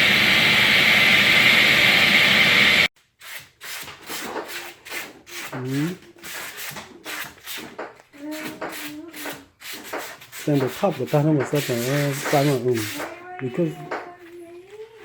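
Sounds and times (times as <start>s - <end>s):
loud whirring noise: 0.0s - 2.9s
sandpaper rubbing on wood: 3.2s - 15.0s.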